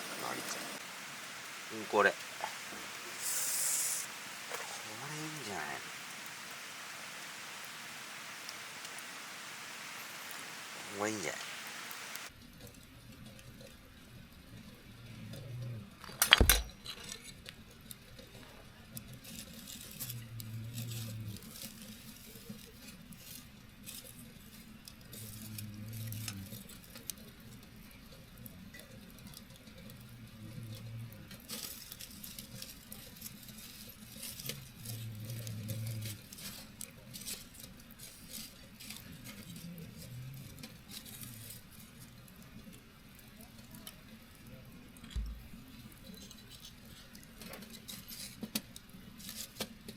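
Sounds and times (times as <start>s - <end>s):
campfire crackling and popping: 0.0s - 12.3s
low snoring: 34.9s - 36.3s.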